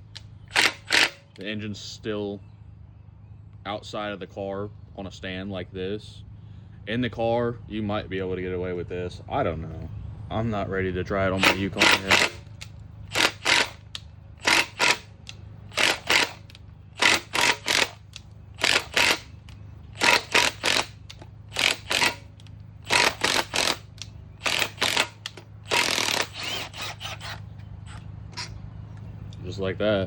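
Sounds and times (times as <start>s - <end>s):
wrench mechanical bursts: 0.0s - 1.4s, 11.4s - 27.5s.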